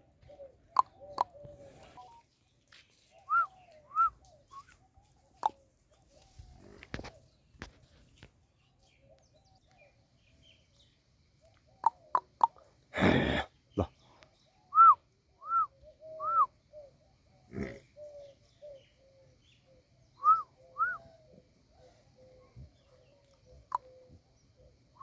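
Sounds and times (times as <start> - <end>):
faint wavering bird calls: 0.0 - 2.2, 13.7 - 25.0
birds chirping: 0.0 - 14.7, 15.8 - 25.0.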